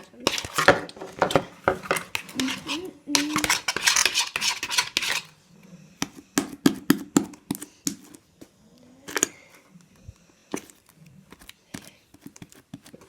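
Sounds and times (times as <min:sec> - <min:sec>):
utensil scraping and knocking bowl: 0:00.0 - 0:05.3.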